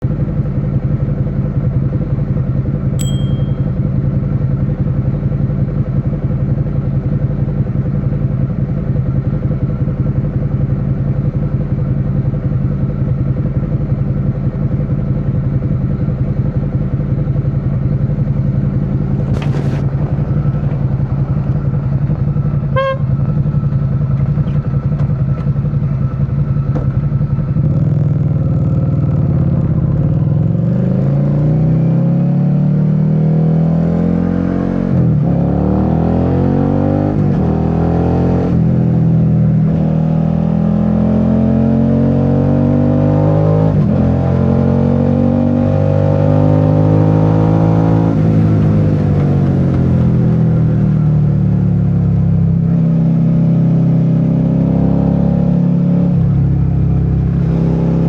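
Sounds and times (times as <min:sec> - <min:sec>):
motorcycle engine running: 0:00.0 - 0:31.6, 0:43.8 - 0:58.0
short high beep: 0:03.0 - 0:03.8.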